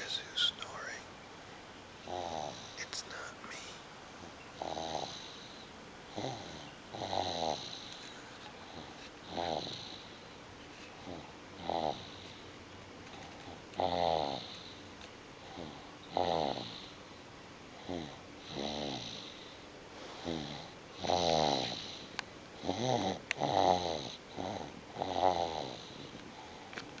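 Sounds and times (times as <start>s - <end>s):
short pitched snores: 2.1s - 2.8s, 4.6s - 7.9s, 8.8s - 10.0s, 11.0s - 12.3s, 13.8s - 14.8s, 15.5s - 17.0s, 17.8s - 19.4s, 20.0s - 26.0s.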